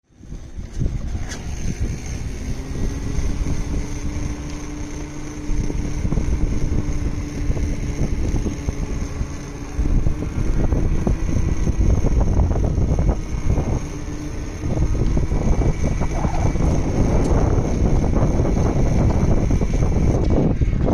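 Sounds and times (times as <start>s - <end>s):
electric scooter hum: 0.0s - 20.9s
wind rumble on microphone: 0.1s - 20.9s.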